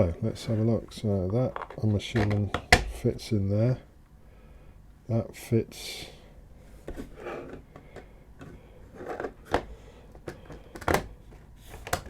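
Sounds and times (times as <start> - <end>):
plastic parts clicking: 1.4 - 3.0, 7.5 - 12.0.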